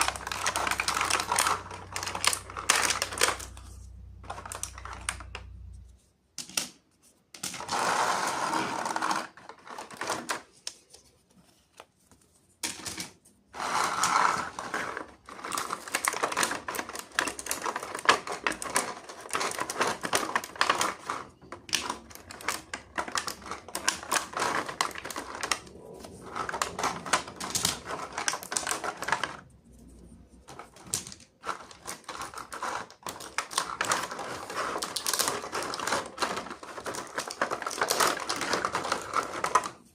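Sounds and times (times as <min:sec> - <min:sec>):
plastic toy pieces clicking: 0:00.0 - 0:05.5, 0:12.6 - 0:29.4, 0:30.5 - 0:39.9.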